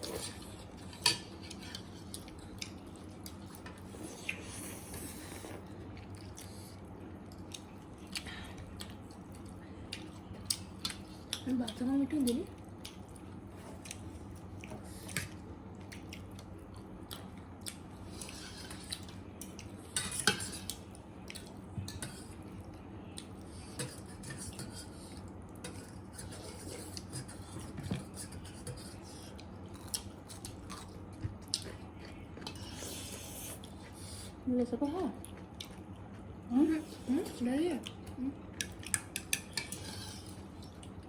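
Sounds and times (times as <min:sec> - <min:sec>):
cutlery clinking and scraping on bowls: 0:20.0 - 0:20.8, 0:38.6 - 0:40.4.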